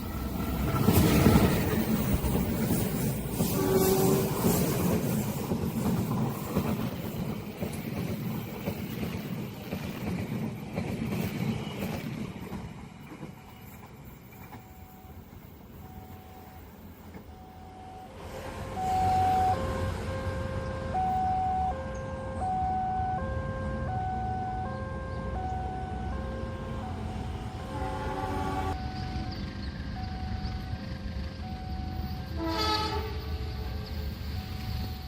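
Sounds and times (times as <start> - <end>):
train rumbling past: 0.0 - 35.0
level-crossing warning alarm: 14.5 - 32.9.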